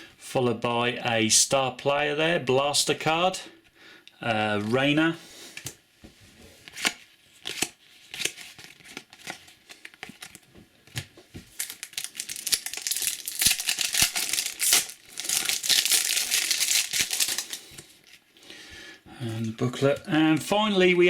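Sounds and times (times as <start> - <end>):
wrapper crinkling and tearing: 6.7 - 10.5, 11.5 - 18.2.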